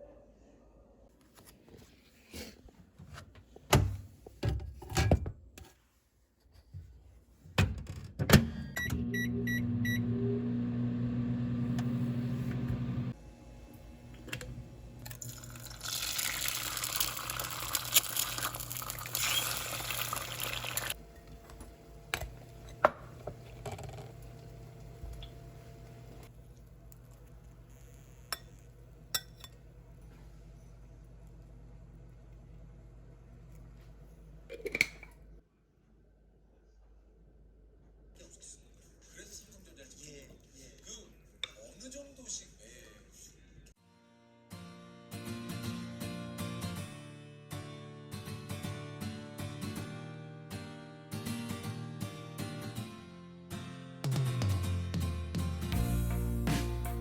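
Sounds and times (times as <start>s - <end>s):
machine hum: 8.8s - 15.8s, 21.0s - 33.6s.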